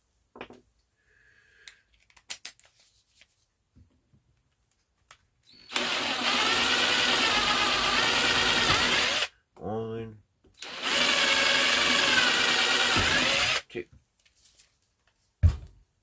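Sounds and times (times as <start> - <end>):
electric drill running: 5.7 - 9.3, 10.6 - 13.6.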